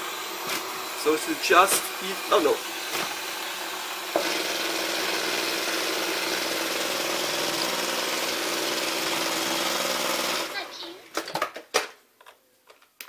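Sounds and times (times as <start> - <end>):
robot vacuum cleaner humming: 0.0 - 7.0.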